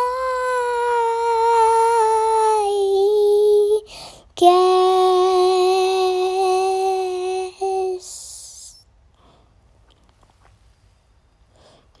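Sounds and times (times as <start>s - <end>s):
child singing a held note: 0.0s - 8.8s
child breathing: 3.8s - 4.4s, 11.5s - 12.0s.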